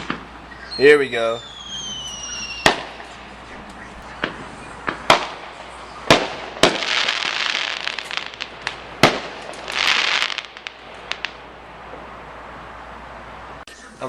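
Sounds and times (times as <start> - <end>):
fireworks bangs: 0.0 - 12.2
fireworks crackling: 0.0 - 12.7.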